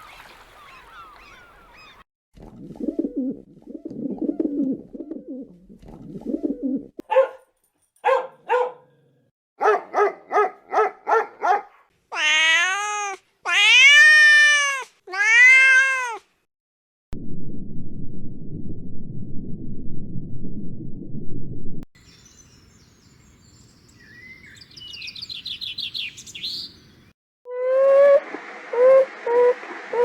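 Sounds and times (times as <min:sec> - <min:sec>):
cat meowing: 0:12.1 - 0:16.2.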